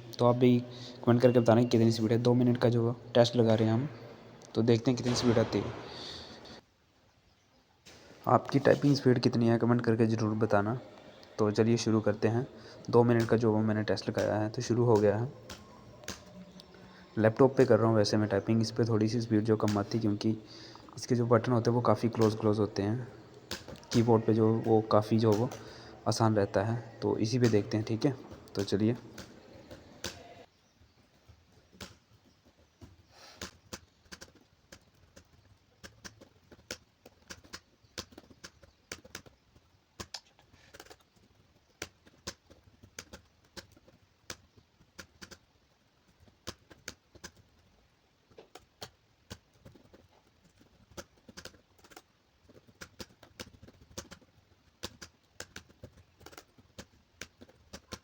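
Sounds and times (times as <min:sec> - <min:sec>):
laptop keyboard typing: 0:10.7 - 0:30.4, 0:33.2 - 0:58.0.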